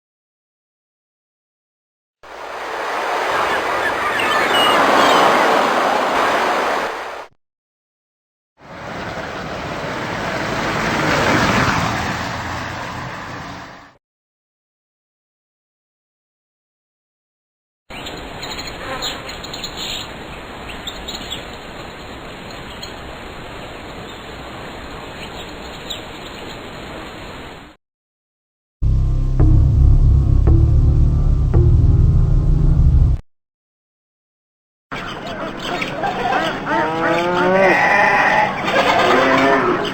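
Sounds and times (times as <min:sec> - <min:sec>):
steady noise: 0:02.3 - 0:04.2, 0:28.8 - 0:33.2
breaking wave rushing: 0:02.3 - 0:07.3.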